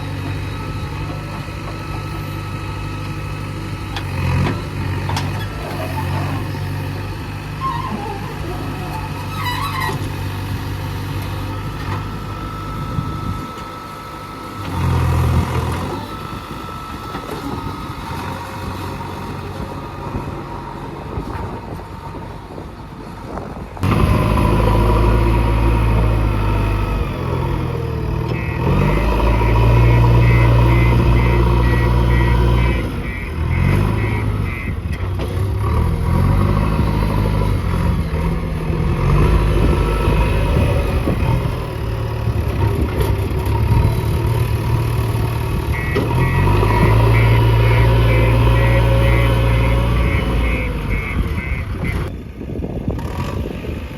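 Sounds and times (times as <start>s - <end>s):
backhoe diesel engine revving: 0.0s - 53.9s
rapid beeping alarm: 28.4s - 34.8s, 45.7s - 52.1s.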